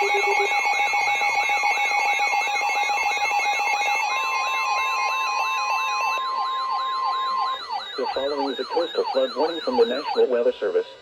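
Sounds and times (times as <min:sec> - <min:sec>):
stepping beeps: 0:00.0 - 0:00.7, 0:06.0 - 0:10.3
steady beeps: 0:00.0 - 0:01.2, 0:04.2 - 0:10.3
electronic yelp siren: 0:00.0 - 0:10.4.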